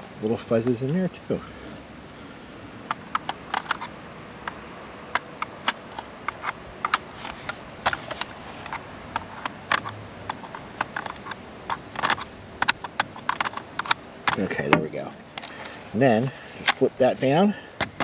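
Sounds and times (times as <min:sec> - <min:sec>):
hard plastic clicks and taps: 0:02.9 - 0:03.8, 0:04.4 - 0:15.8.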